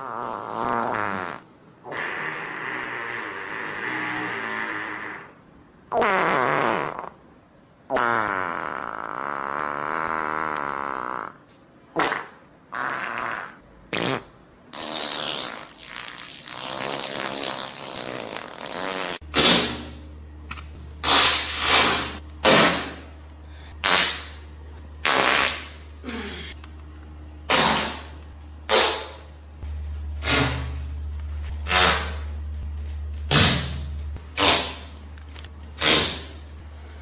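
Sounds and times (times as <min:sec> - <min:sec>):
farts: 0:00.0 - 0:07.2, 0:07.9 - 0:20.0, 0:21.0 - 0:23.1, 0:23.8 - 0:24.4, 0:25.0 - 0:25.8, 0:27.5 - 0:29.3, 0:30.2 - 0:32.4, 0:33.3 - 0:36.5
steady low hum: 0:16.5 - 0:37.0.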